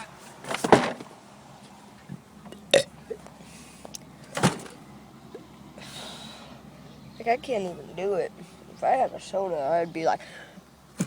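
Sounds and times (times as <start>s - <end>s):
person burping: 2.6s - 3.2s.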